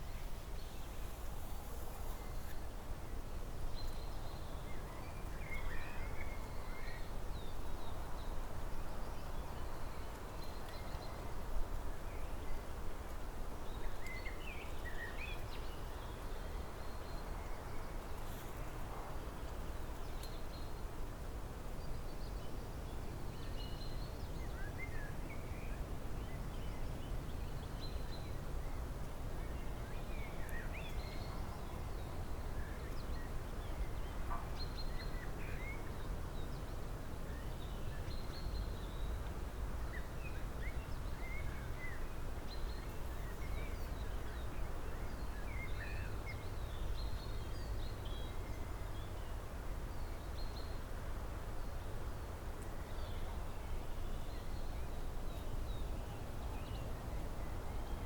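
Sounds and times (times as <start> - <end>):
songbirds chirping: 21.8 - 58.0.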